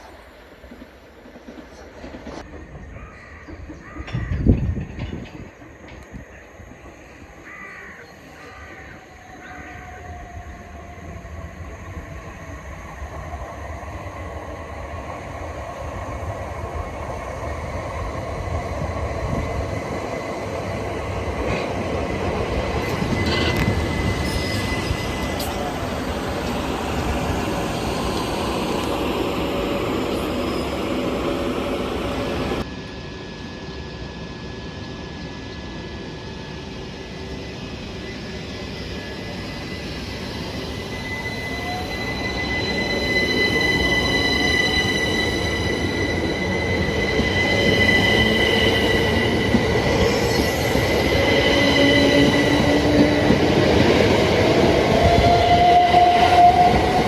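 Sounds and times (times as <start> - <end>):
electric train passing: 0.0 - 57.0
train wheel squeal: 17.8 - 57.0.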